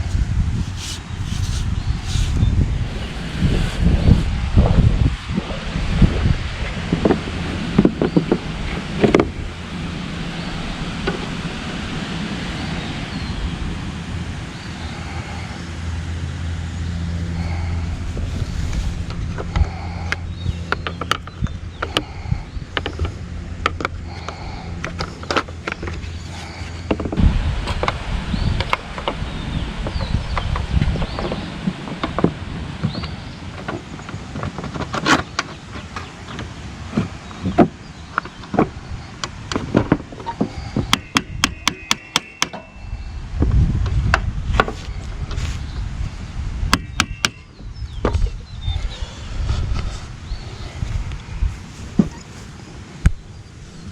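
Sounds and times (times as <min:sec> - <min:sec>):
low rumbling: 0:00.0 - 0:53.9
steady low hum: 0:00.0 - 0:53.9
hand tools tapping on metal: 0:19.1 - 0:27.2, 0:31.0 - 0:42.8.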